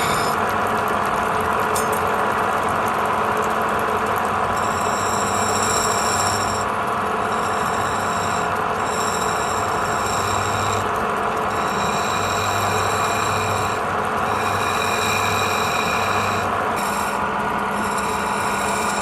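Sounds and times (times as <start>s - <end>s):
high whine: 0.0s - 0.4s, 4.6s - 19.0s
wood lathe running: 0.0s - 0.4s, 3.6s - 19.0s.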